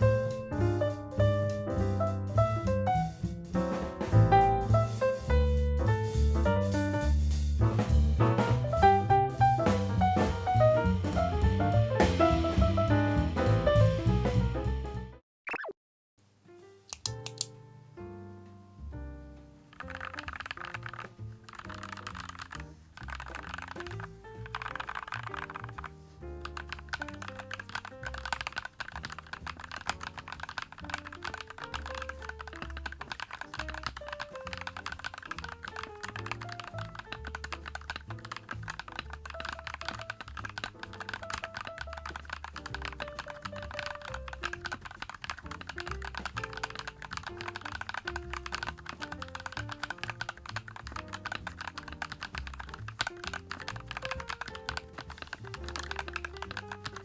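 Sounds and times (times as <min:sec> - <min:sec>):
background music with bass line: 0:00.0 - 0:15.2
fast typing on mechanical keyboard: 0:19.7 - 0:57.0.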